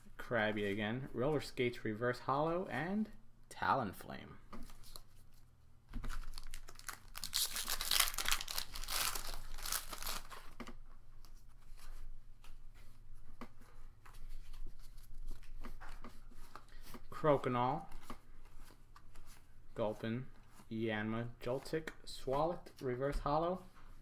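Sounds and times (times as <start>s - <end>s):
cards clicking and rustling: 6.0s - 10.8s
foil pack tearing and crinkling: 6.1s - 10.6s.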